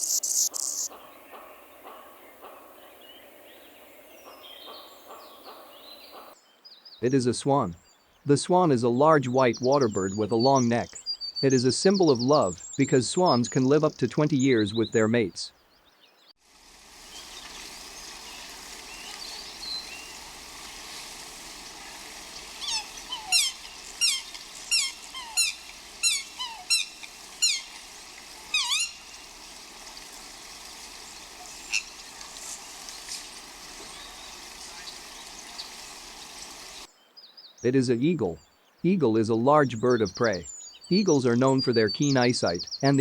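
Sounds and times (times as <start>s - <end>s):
outdoor background hiss: 0.0s - 43.0s.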